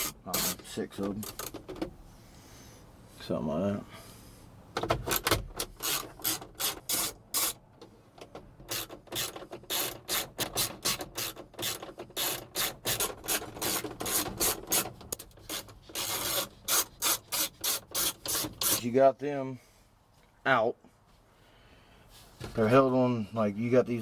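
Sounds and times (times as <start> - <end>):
hand ratchet clicking: 5.1 - 7.6, 8.7 - 18.8.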